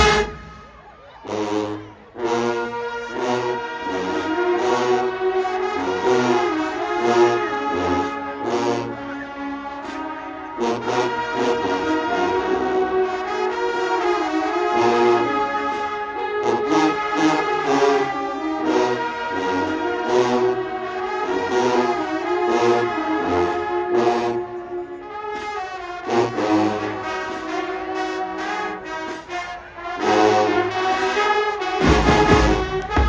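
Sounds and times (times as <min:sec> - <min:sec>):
drumline: 0:00.0 - 0:01.5, 0:31.7 - 0:33.0
marching band brass: 0:00.0 - 0:33.0
bass drum thumps: 0:31.8 - 0:33.0.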